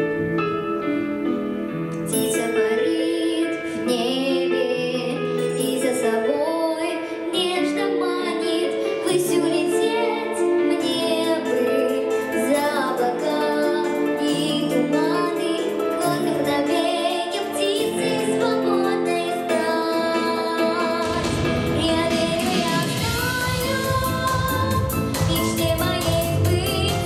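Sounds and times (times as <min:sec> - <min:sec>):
woman singing: 0:02.1 - 0:27.0
backing track: 0:07.4 - 0:27.0
drum beat and bass: 0:21.0 - 0:27.0.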